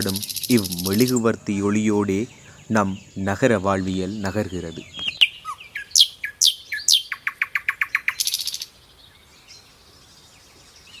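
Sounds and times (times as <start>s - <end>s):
songbird whistling and trilling: 0.0s - 1.2s, 4.8s - 9.6s.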